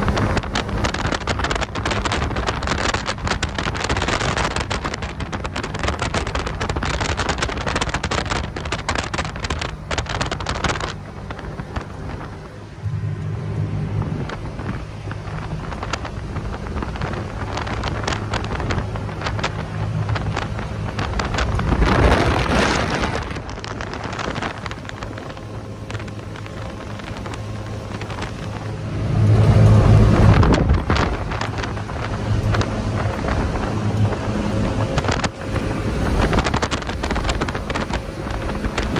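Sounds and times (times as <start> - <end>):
speedboat engine running: 0.0 - 38.9
water rushing: 0.0 - 38.9
wind buffeting microphone: 0.0 - 38.9.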